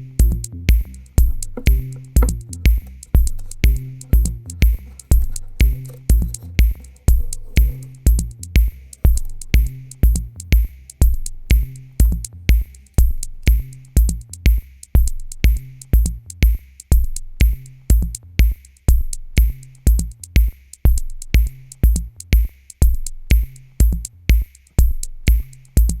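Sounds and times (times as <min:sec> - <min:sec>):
electronic music with drum-machine beat: 0:00.0 - 0:26.0.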